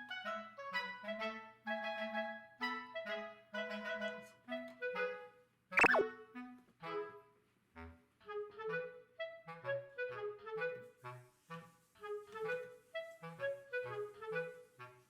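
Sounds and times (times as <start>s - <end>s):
bouncy woodwind background music: 0.0s - 15.0s
squeak sweeping in pitch: 5.8s - 6.1s.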